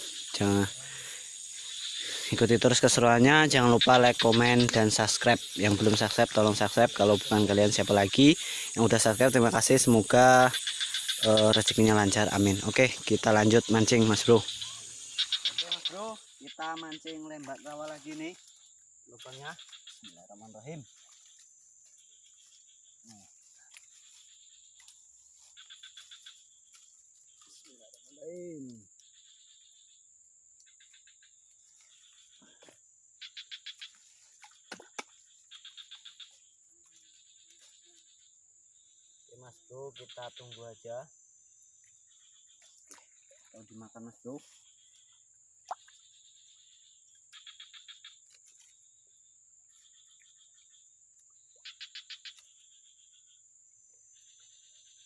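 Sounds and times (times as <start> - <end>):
rapid chirps: 0.0 - 17.4
high-pitched insect drone: 0.0 - 32.6, 35.0 - 42.6, 51.4 - 55.0
rapid insect chirps: 0.0 - 55.0.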